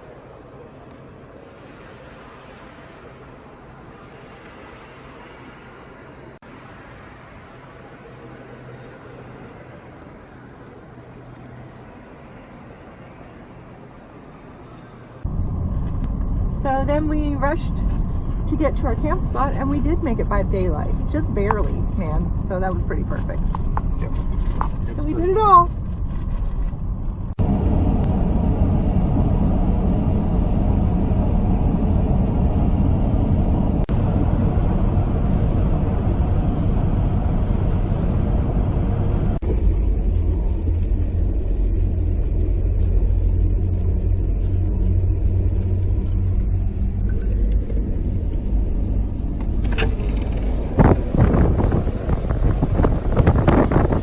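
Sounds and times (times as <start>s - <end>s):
car driving rumble: 0.0s - 54.0s.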